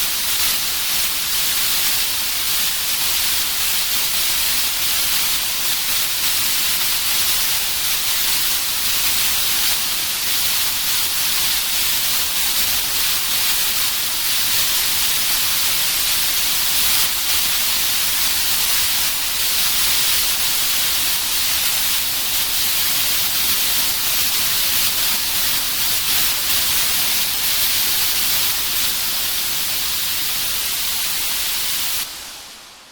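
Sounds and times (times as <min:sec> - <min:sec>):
tv static hiss: 0:00.0 - 0:32.9.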